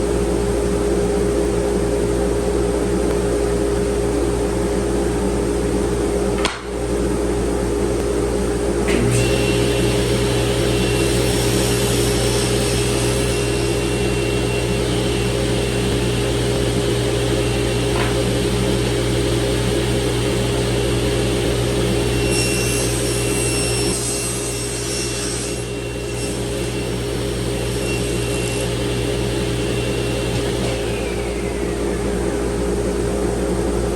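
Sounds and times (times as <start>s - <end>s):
table saw whining: 8.8s - 33.8s.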